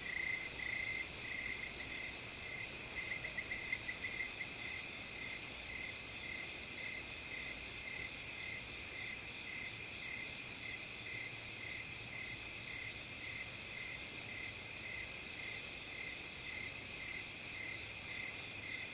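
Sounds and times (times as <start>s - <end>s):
crickets trilling: 0.0s - 6.3s.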